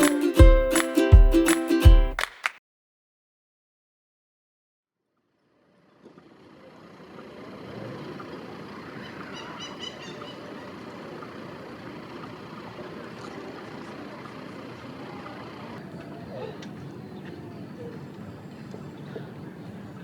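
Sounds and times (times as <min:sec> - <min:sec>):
vehicle rumble: 0:05.9 - 0:18.4.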